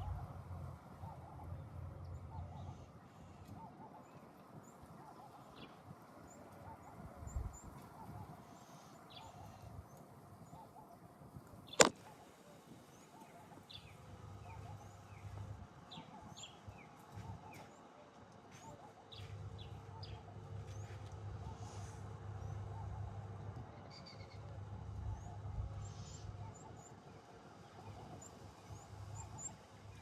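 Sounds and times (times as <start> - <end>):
sharp click: 11.7 - 12.0.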